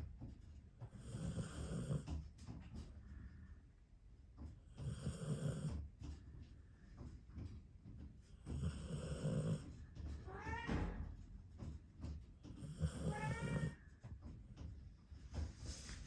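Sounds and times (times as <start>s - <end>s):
dog snoring: 0.8s - 2.2s, 4.7s - 5.9s, 8.4s - 9.7s, 12.5s - 13.7s.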